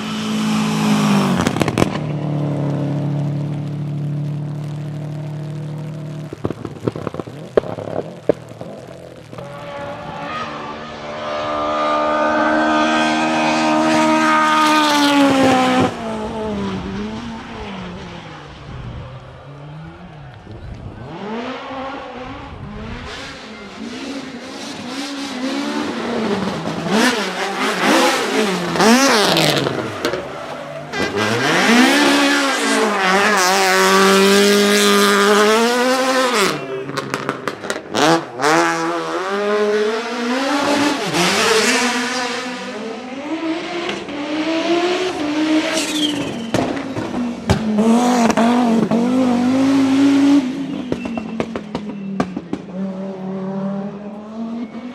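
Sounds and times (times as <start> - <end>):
rally car engines revving: 0.0 - 54.9
exhaust pops and crackles: 1.1 - 11.0, 25.8 - 39.0, 45.6 - 53.0.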